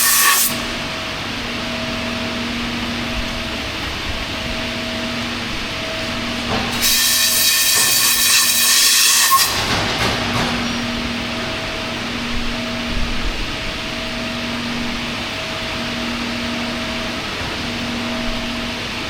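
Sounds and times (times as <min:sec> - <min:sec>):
loud hiss: 0:00.0 - 0:00.6, 0:06.8 - 0:09.6
machinery humming: 0:00.0 - 0:19.0.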